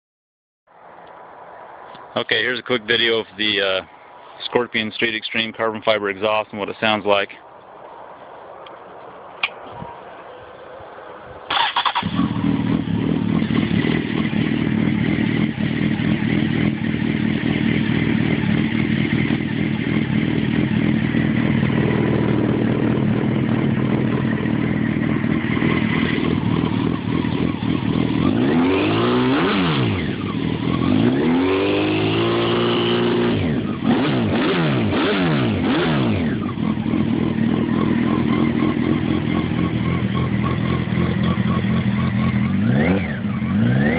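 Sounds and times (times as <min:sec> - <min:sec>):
motorcycle engine idling: 0:09.8 - 0:28.4, 0:29.9 - 0:31.2, 0:35.6 - 0:43.9
motorcycle engine revving: 0:11.5 - 0:43.9.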